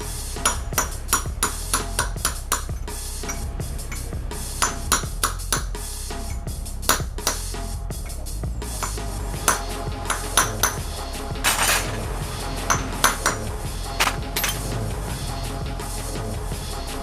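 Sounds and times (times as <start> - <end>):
background music: 0.0 - 17.0
metal tools clinking: 11.4 - 12.1, 14.0 - 14.8.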